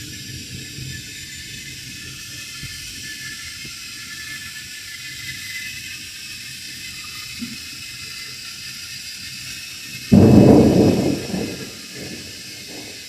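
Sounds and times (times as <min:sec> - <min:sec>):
heavy rain falling: 0:10.1 - 0:13.0.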